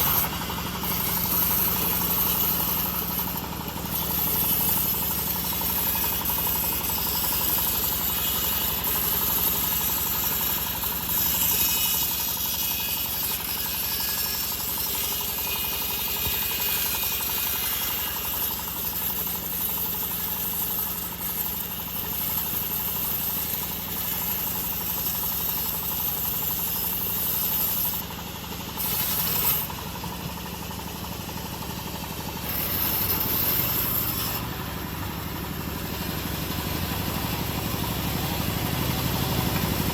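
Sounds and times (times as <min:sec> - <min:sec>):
band saw blade cutting hiss: 0:00.0 - 0:28.0
engine drone: 0:00.0 - 0:39.9.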